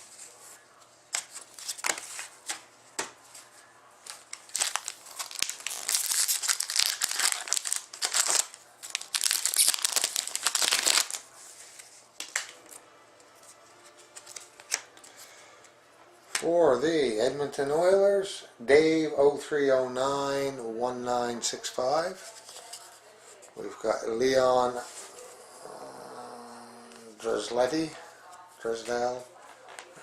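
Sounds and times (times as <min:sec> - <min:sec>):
wrapper tearing and crinkling: 0:04.1 - 0:11.3.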